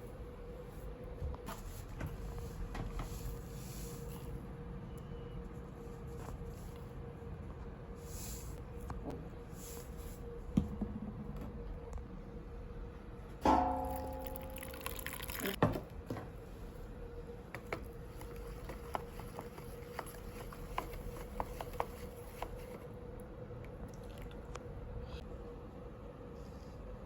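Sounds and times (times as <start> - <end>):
metal part knocked and ringing: 13.4 - 14.8.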